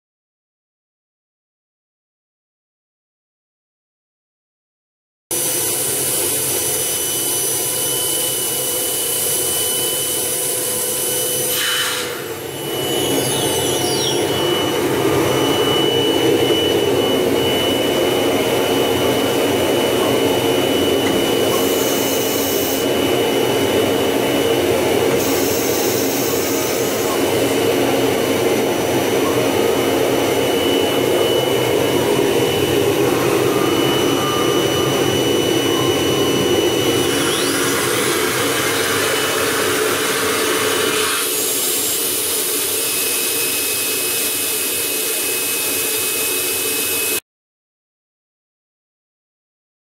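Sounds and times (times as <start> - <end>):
router machine whine: 5.3 - 47.2
falling whistling tones: 12.7 - 19.0.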